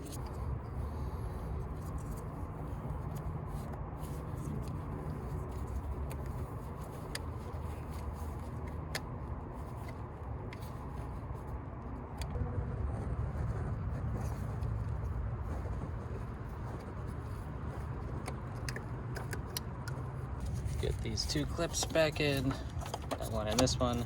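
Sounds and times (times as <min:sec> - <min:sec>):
low background rumble: 0:00.0 - 0:24.0
plastic parts clicking and knocking: 0:21.3 - 0:24.0.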